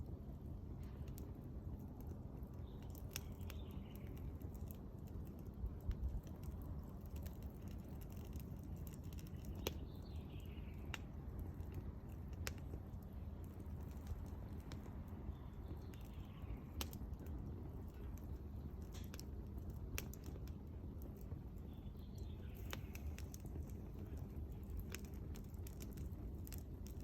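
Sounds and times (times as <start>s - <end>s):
wood fire crackling: 0.0s - 27.0s.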